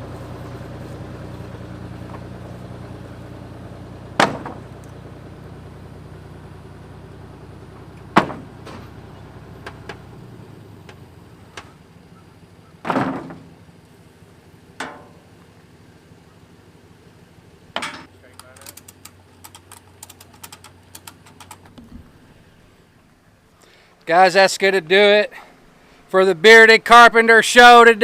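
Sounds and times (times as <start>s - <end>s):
engine idling: 0.0s - 28.0s
loud sharp knocks: 4.2s - 4.7s, 8.1s - 8.8s.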